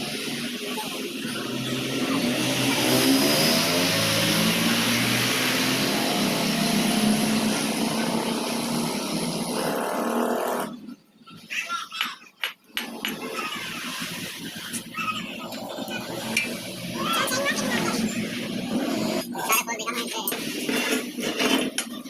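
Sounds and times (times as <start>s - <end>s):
machinery running with hiss: 0.0s - 9.9s.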